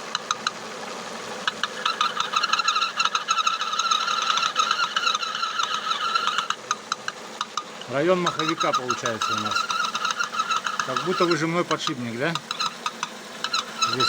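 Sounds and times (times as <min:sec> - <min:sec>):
engine ticking: 0:01.4 - 0:14.0
high-pitched engine squeal: 0:01.6 - 0:06.6, 0:08.1 - 0:14.0.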